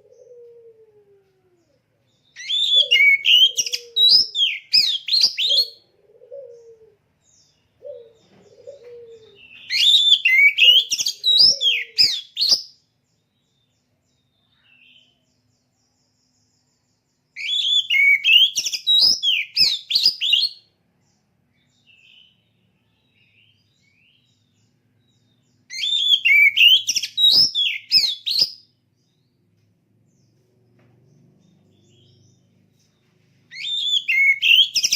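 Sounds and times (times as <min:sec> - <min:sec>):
bird whistling song: 0:02.2 - 0:05.8, 0:07.9 - 0:12.8, 0:17.4 - 0:20.7, 0:25.1 - 0:29.3, 0:33.5 - 0:34.9.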